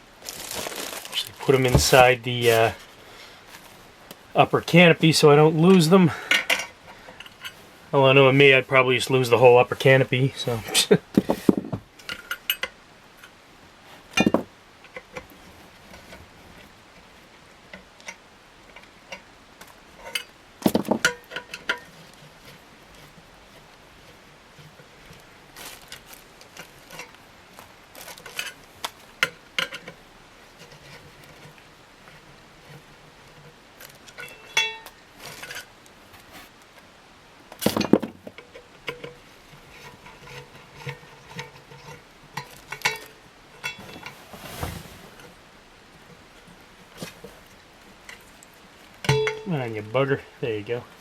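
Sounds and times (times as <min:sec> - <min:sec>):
metal parts clinking and clattering: 0:34.1 - 0:35.7.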